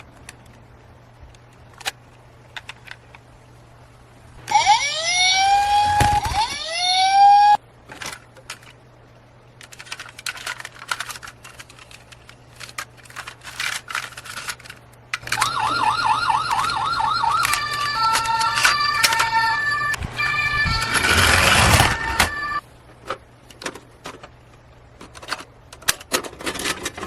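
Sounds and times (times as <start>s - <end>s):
plastic clicks and rattles: 1.3s - 3.2s, 9.6s - 15.5s, 23.0s - 24.4s, 25.0s - 27.0s
fast warbling siren: 4.5s - 7.6s, 15.4s - 22.6s
toy siren whooping: 4.5s - 7.6s, 15.4s - 22.6s.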